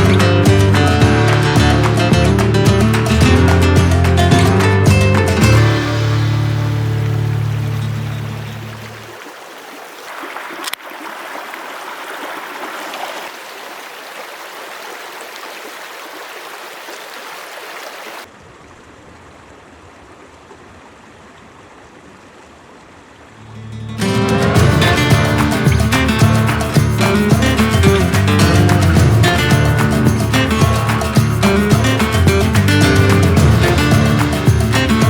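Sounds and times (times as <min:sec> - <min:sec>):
stream rushing over rocks: 0:05.4 - 0:23.4.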